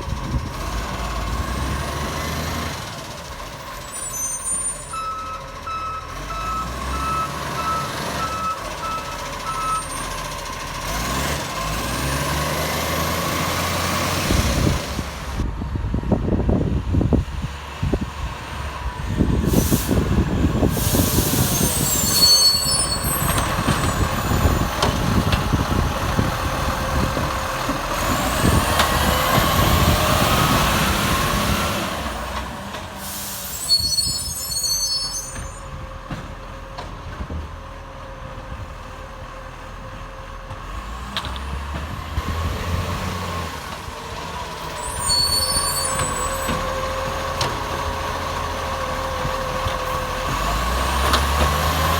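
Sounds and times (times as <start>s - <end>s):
garbage truck engine running: 5.3s - 33.6s
air brake hisses: 19.4s - 23.4s, 33.0s - 35.7s.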